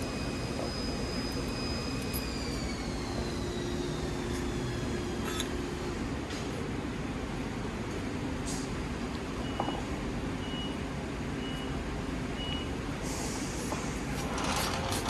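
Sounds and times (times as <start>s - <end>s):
machine noise with high whine: 0.0s - 7.1s.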